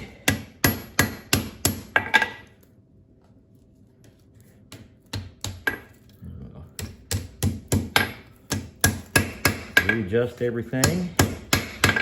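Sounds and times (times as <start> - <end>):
hammer striking hot metal on anvil: 0.0 - 2.2, 6.8 - 10.2, 10.8 - 12.0.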